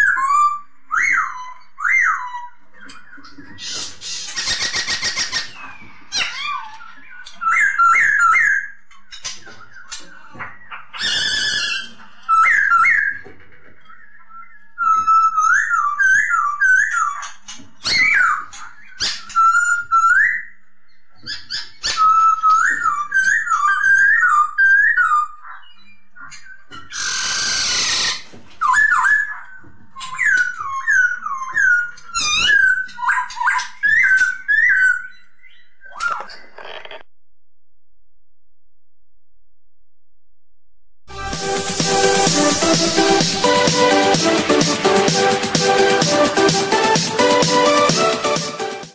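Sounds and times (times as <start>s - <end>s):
harsh noisy bird outburst: 11.0s - 13.2s, 24.8s - 35.0s.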